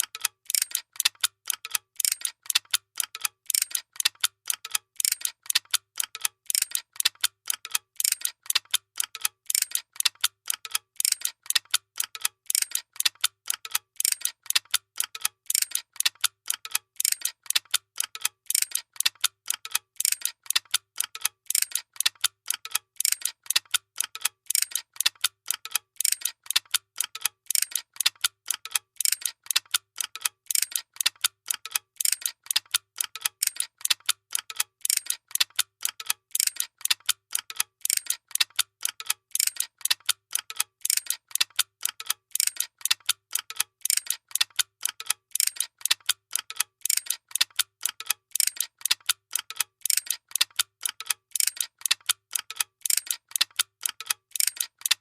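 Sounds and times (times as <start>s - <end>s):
machinery ticking rapidly: 22.5s - 55.0s.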